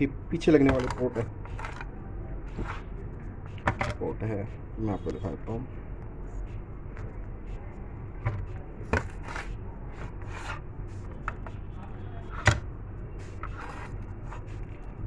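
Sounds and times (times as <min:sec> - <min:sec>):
steady background noise: 0:00.0 - 0:15.0
knocks and clacks of handling: 0:00.6 - 0:01.9, 0:03.5 - 0:04.1, 0:08.2 - 0:10.6
light rustling and scraping: 0:00.6 - 0:01.9, 0:02.5 - 0:04.2, 0:06.9 - 0:14.9.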